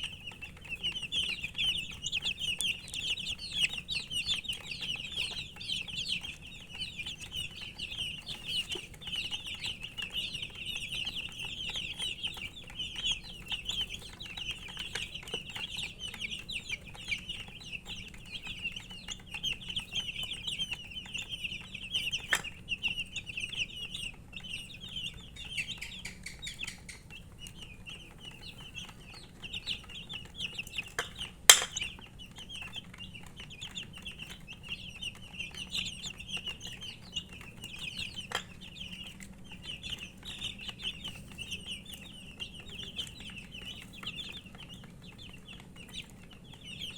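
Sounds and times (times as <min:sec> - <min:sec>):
baby chicks peeping: 0:00.0 - 0:46.9.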